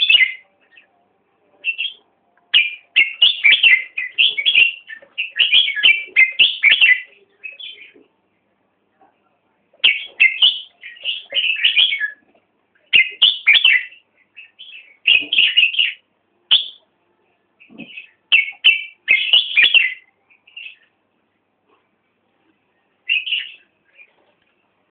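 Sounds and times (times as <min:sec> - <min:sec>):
bird chirping: 0:00.0 - 0:01.0, 0:01.6 - 0:08.1, 0:09.8 - 0:16.9, 0:17.6 - 0:21.0, 0:22.7 - 0:24.3.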